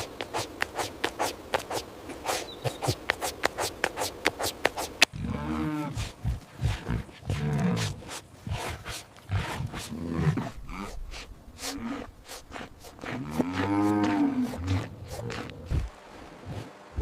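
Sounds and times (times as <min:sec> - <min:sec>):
cows mooing: 0:13.0 - 0:15.9.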